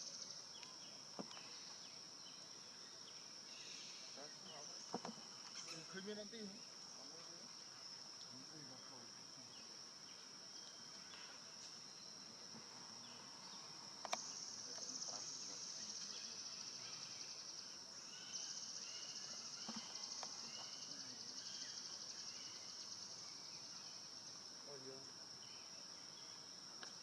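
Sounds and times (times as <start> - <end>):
insects buzzing: 0.0 - 27.0
sharp click: 14.0 - 14.3.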